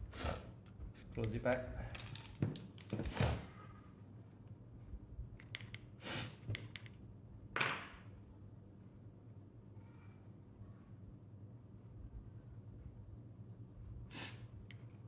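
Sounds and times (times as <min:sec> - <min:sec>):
short breathy hissing bursts: 0:06.0 - 0:06.4, 0:14.1 - 0:14.5.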